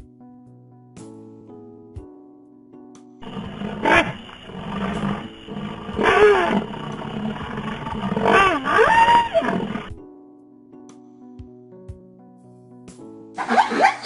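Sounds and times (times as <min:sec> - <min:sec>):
wild animal calling: 0:03.2 - 0:10.0.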